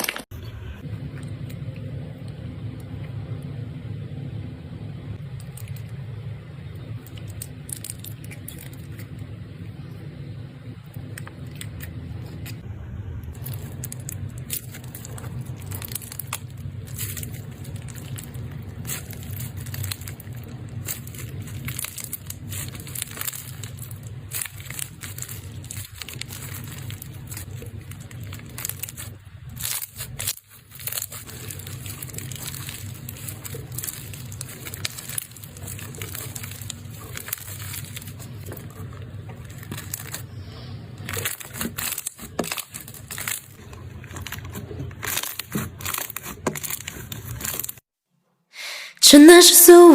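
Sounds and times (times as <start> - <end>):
low background hum: 0.0 - 47.8
slime crackling and popping: 5.2 - 9.4, 13.3 - 47.8.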